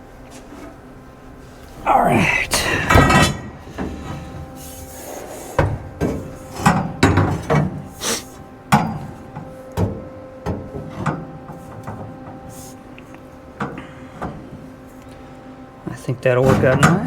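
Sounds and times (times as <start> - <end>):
metal knocks and clanks: 1.7 - 8.0, 8.7 - 12.4, 16.4 - 17.0.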